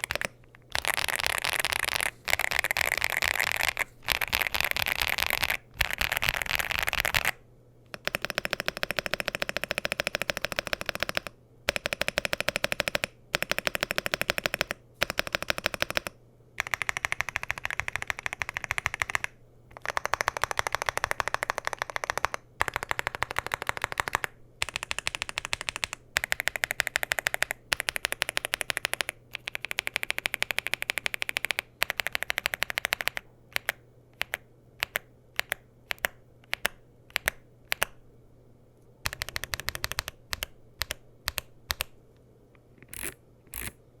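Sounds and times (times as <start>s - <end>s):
fast typing on mechanical keyboard: 0.0s - 37.9s, 39.0s - 41.9s, 42.8s - 43.7s.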